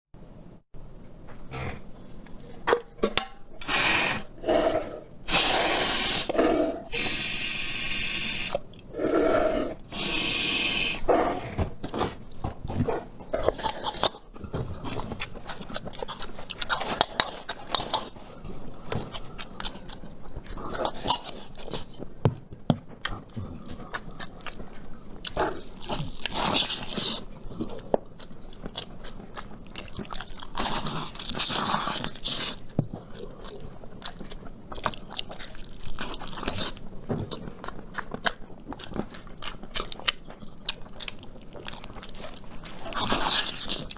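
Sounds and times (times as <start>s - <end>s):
slurping and sucking: 3.6s - 11.7s
wet chewing and crunching: 11.8s - 43.9s.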